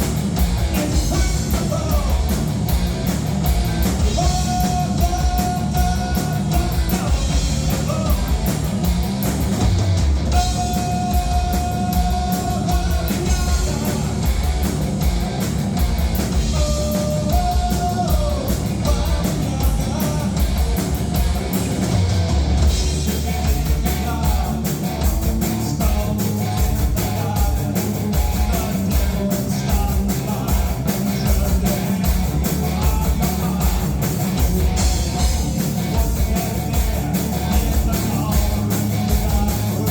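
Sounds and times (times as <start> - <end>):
live rock band playing: 0.0 - 39.9
person singing: 4.0 - 8.4, 10.3 - 14.3, 34.8 - 39.9.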